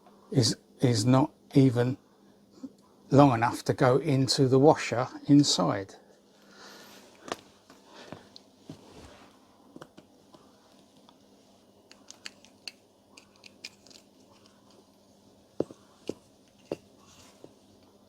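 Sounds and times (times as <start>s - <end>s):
clicks and rattles of handled parts: 11.9s - 14.8s.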